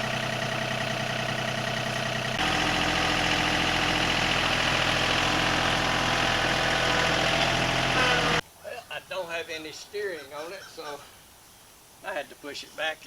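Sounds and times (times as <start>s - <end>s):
vehicle engine idling: 0.0s - 8.4s.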